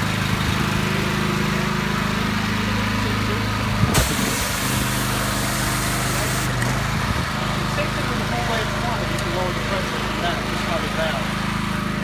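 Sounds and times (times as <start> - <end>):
pressure washer engine running: 0.0 - 12.0
spray hissing: 3.9 - 6.5.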